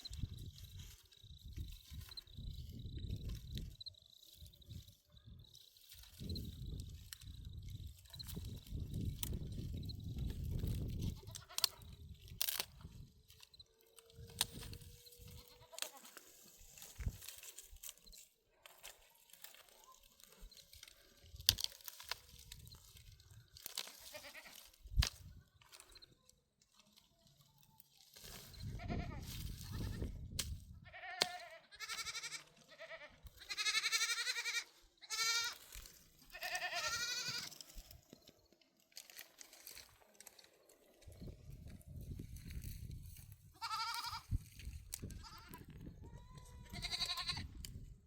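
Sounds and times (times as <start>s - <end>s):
goats bleating: 11.1s - 11.8s, 15.3s - 16.2s, 24.0s - 24.7s, 30.8s - 35.6s, 36.2s - 37.5s, 43.6s - 44.3s, 45.2s - 47.4s.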